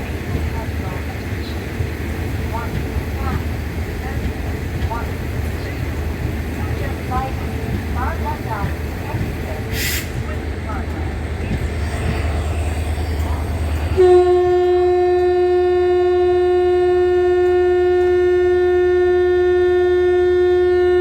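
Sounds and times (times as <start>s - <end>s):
low train rumble: 0.0s - 21.0s
locomotive horn blast: 13.9s - 21.0s.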